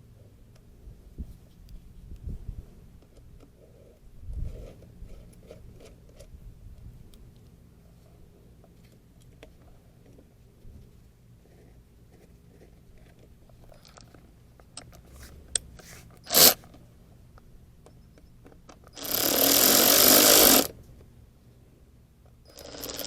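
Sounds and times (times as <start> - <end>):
parts clicking: 13.0 - 16.8
power tool driving screws: 15.0 - 16.6, 18.9 - 20.7, 22.5 - 23.0.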